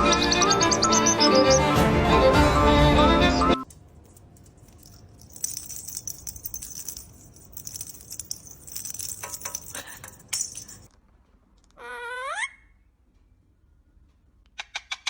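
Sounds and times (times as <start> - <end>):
small metal bells jingling: 3.7 - 10.9.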